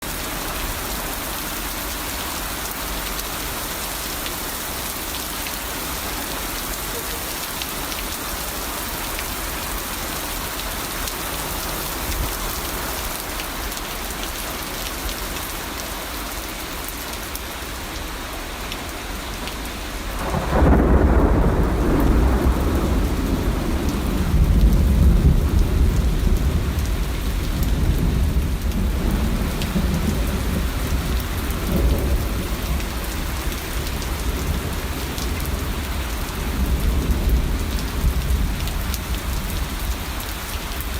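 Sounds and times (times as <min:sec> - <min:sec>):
heavy rain: 0:00.0 - 0:40.9
rolling thunder: 0:20.2 - 0:39.9.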